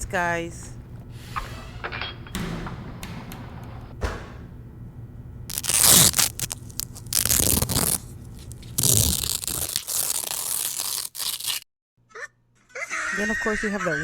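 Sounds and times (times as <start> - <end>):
velcro ripping open: 5.5 - 11.6.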